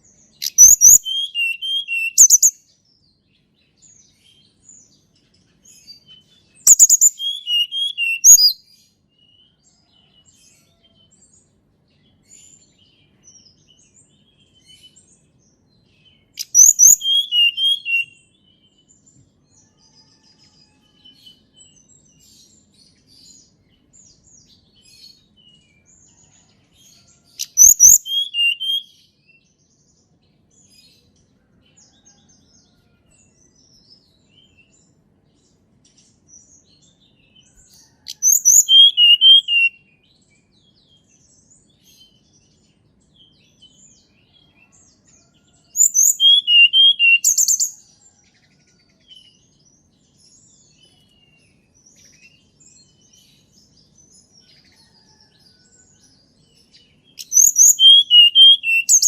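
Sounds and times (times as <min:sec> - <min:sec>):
faint bird chirps: 0:00.0 - 0:34.8, 0:35.9 - 0:59.0
bird singing warbled notes: 0:06.6 - 0:08.6, 0:16.4 - 0:18.1, 0:38.5 - 0:39.7, 0:45.8 - 0:47.4, 0:57.2 - 0:59.0.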